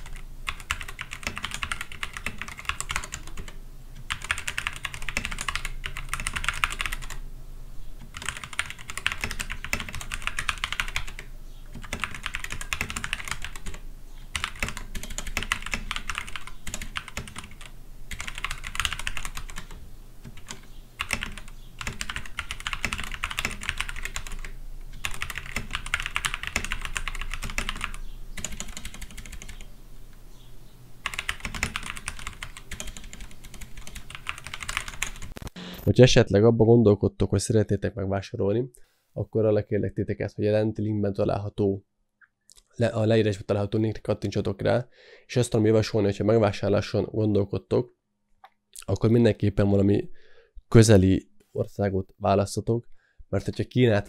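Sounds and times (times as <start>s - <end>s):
mechanical keyboard typing: 0.0s - 7.2s, 8.0s - 29.7s, 31.0s - 35.6s.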